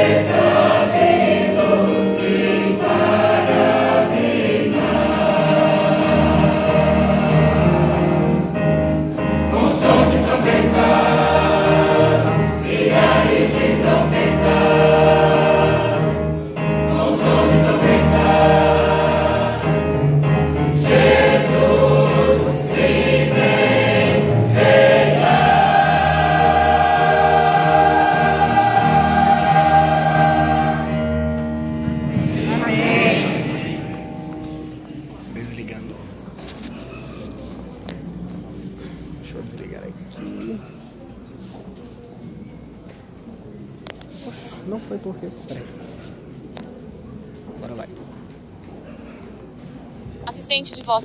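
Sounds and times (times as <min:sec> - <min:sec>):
choir singing a hymn: 0:00.0 - 0:35.2.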